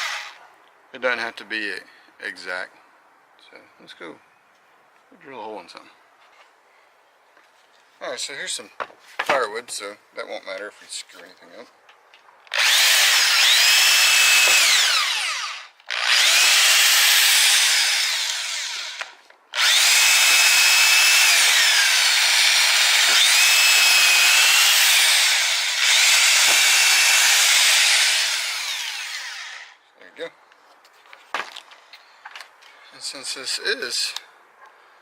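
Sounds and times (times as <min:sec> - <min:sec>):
drill drilling into wood: 0:00.0 - 0:00.4, 0:12.5 - 0:29.8.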